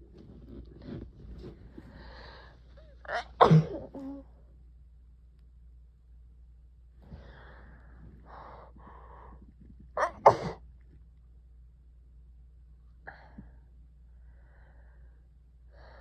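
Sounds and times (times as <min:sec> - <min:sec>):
person sneezing: 0:03.1 - 0:04.2, 0:10.0 - 0:10.6.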